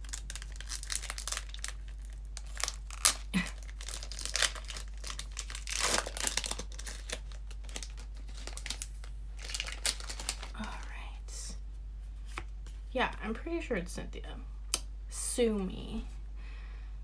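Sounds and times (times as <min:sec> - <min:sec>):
foil wrapper ripping: 0:00.0 - 0:10.8
foil wrapper crinkling: 0:00.0 - 0:11.0.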